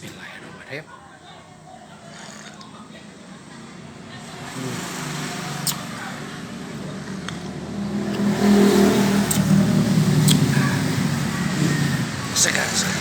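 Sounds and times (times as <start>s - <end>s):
vehicle engine running: 3.9s - 13.0s.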